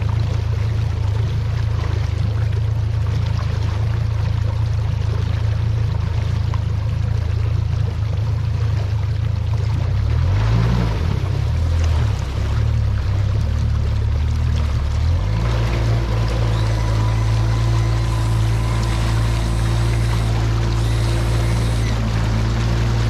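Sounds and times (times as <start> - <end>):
boat motor running: 0.0 - 23.0
water rushing along hull: 0.0 - 23.0.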